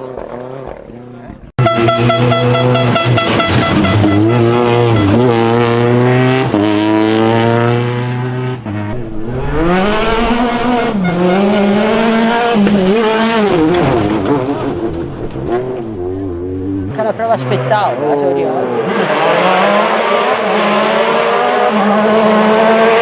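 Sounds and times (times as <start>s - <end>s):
rally car engine revving: 0.0s - 23.0s.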